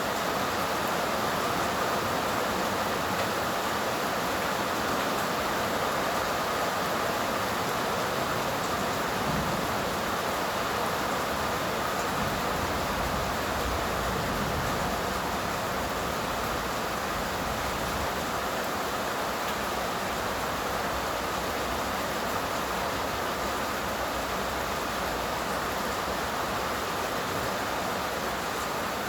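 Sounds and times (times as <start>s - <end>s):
rain falling: 0.0s - 29.0s.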